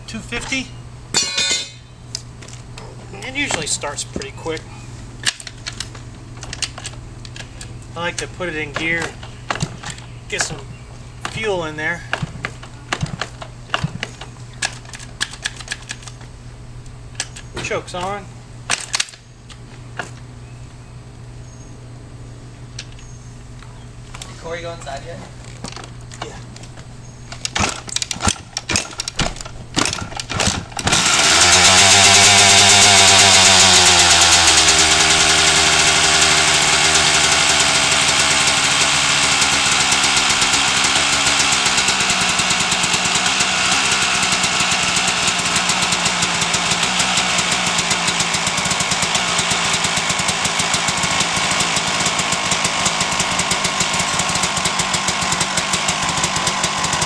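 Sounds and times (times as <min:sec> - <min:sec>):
engine turning over knocks: 0:00.4 - 0:04.6, 0:05.2 - 0:16.3, 0:24.0 - 0:57.0
two-stroke engine running: 0:03.2 - 0:16.2, 0:27.3 - 0:57.0.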